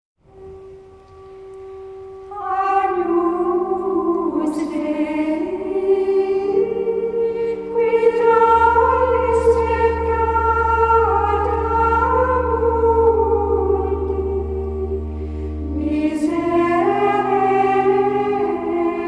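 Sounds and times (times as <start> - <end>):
choir-like voices: 2.3 - 19.0
synthesizer chords: 4.9 - 19.0.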